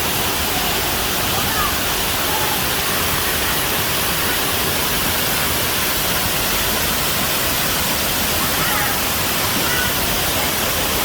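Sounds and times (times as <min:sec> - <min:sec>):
waterfall rushing: 0:00.0 - 0:11.0.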